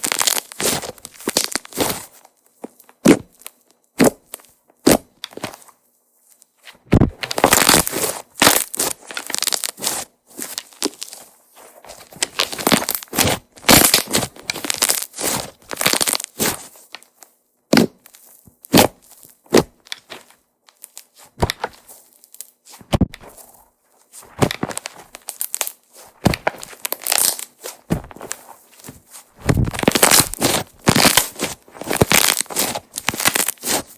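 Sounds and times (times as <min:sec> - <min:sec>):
slime crackling and popping: 0:00.0 - 0:02.0, 0:07.1 - 0:11.2, 0:12.0 - 0:17.1, 0:17.7 - 0:22.6, 0:24.4 - 0:28.5, 0:29.4 - 0:33.9.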